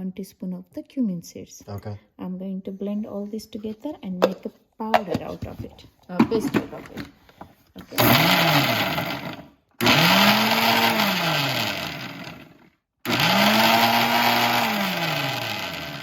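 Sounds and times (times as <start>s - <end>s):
electric blender grinding: 7.8s - 16.0s.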